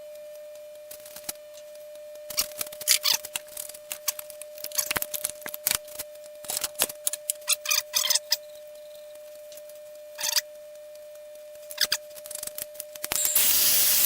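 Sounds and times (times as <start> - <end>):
faint hum: 0.0 - 14.0
abrasive scraping on copper: 13.1 - 14.0.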